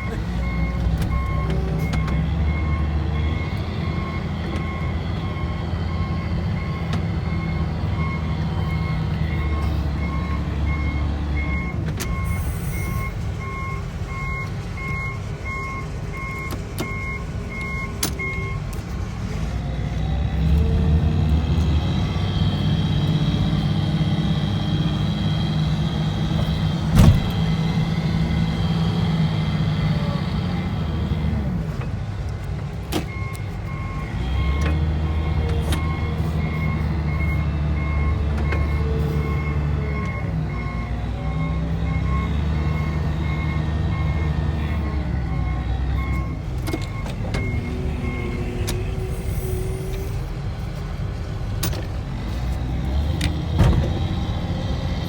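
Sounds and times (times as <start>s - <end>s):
reversing alarm beeping: 0.0s - 18.6s, 33.1s - 49.9s
snow plow engine running: 0.0s - 55.0s.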